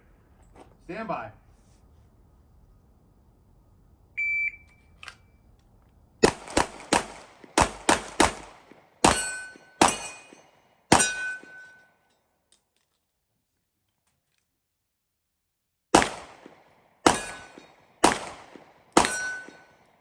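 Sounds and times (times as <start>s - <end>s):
rapid gunshots: 6.2s - 10.2s, 16.0s - 19.7s
steel plates ringing: 9.0s - 12.2s, 17.1s - 17.8s, 19.0s - 19.8s.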